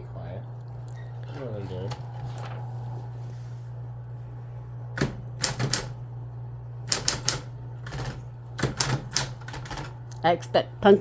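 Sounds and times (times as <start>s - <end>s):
typewriter keystrokes: 5.0s - 6.0s, 6.9s - 10.0s.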